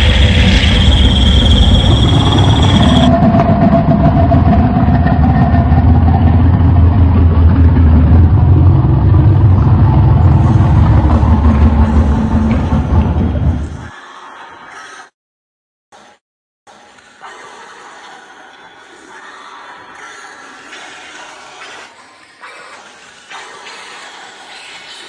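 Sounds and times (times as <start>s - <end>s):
high thin tone: 0.0s - 3.1s
deep rumbling growl: 0.0s - 13.9s.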